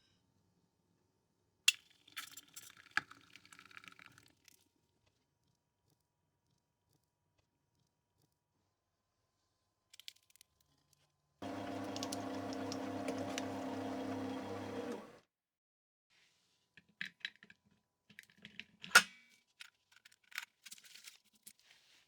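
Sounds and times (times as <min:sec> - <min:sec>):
small electric motor humming: 0:11.4 - 0:15.2.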